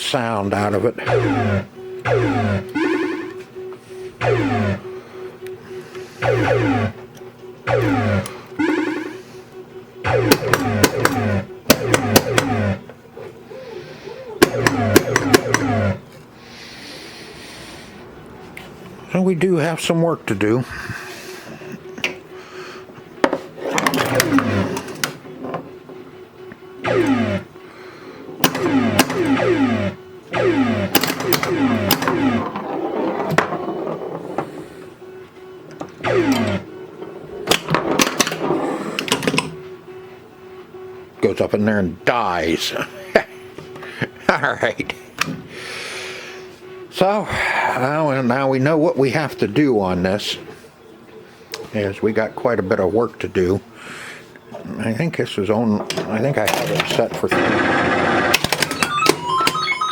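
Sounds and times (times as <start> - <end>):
falling synthesized sweeps: 1.0 - 3.4, 6.2 - 7.0, 7.7 - 9.4, 58.8 - 59.9
low hum: 1.0 - 13.0
pinball switch and solenoid clicks: 7.7 - 9.2, 10.1 - 12.8, 14.4 - 16.0, 23.8 - 25.2, 28.4 - 32.6, 35.7 - 36.7, 37.4 - 39.6, 58.2 - 59.6
sharp mechanical clicks: 28.4 - 32.4.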